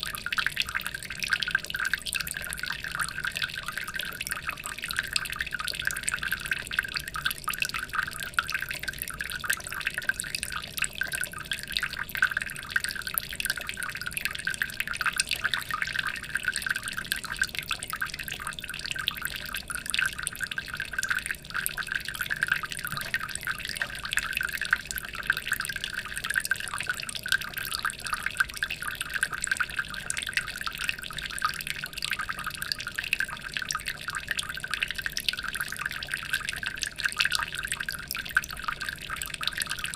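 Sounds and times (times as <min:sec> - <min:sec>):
water trickling and splashing: 0:20.3 - 0:39.9.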